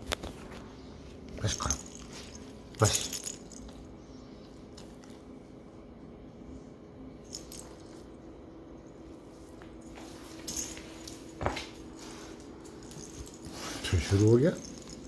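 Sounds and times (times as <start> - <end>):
steady low hum: 0.0 - 15.0
collar tags clinking: 1.4 - 3.9, 10.2 - 15.0.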